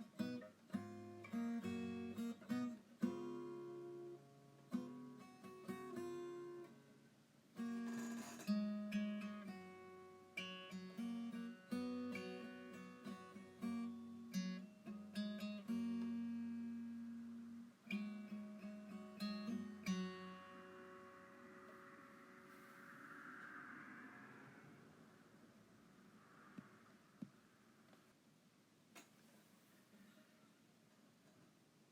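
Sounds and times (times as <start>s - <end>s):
acoustic guitar music: 0.0s - 22.9s
faint hiss: 0.0s - 31.9s.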